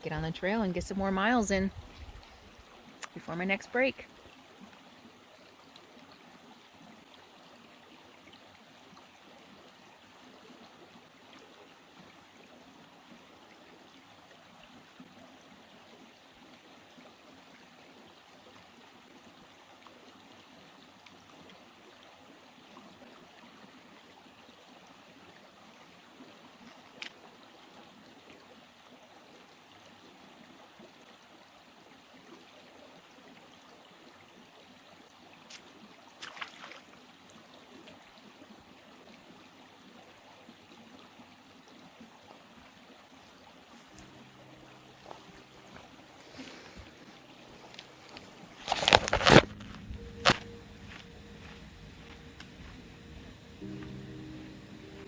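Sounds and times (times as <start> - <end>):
stream babbling: 0.0 - 55.0.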